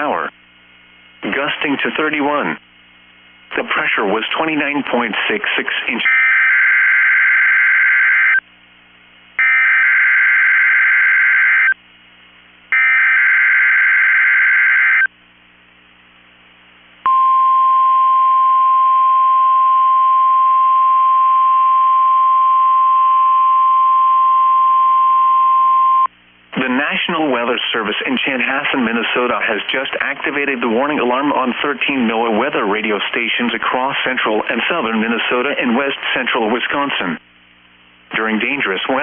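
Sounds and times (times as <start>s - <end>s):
steady warning alarm tone: 6.1s - 8.4s, 9.4s - 11.8s, 12.7s - 15.1s.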